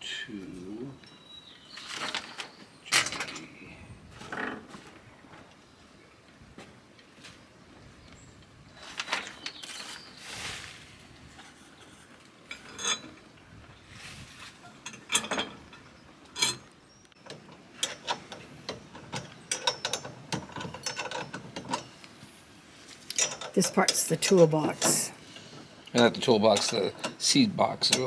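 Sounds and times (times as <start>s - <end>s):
metal parts clicking and clinking: 17.3s - 21.9s, 23.1s - 24.0s.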